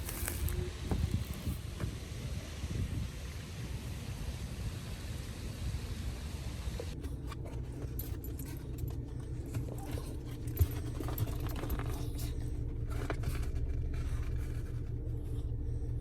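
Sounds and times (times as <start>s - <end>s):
car cabin rumble: 0.0s - 3.0s, 6.8s - 16.0s
light clicks and rattles: 7.0s - 15.2s.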